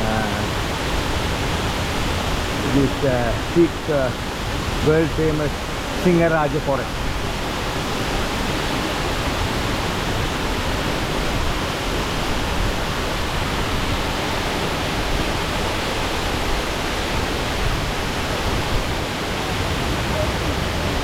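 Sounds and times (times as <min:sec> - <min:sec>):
waterfall pouring: 0:00.0 - 0:12.0.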